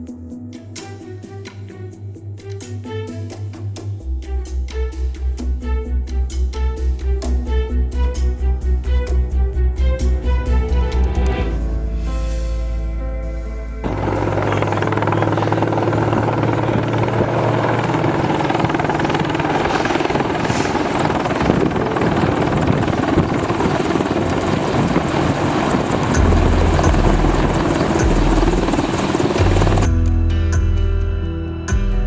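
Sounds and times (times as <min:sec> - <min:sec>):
helicopter rotor and turbine: 0:13.8 - 0:30.0.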